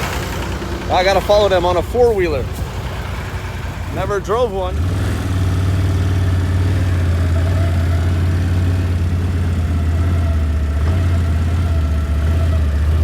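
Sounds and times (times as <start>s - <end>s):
atv engine running: 0.0s - 13.0s.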